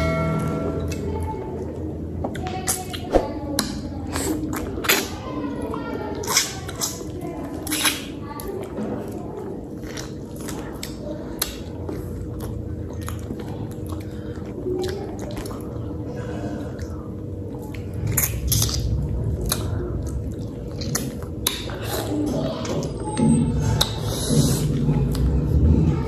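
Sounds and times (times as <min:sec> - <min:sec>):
wet biting and chewing: 0:06.2 - 0:08.5, 0:17.5 - 0:23.2.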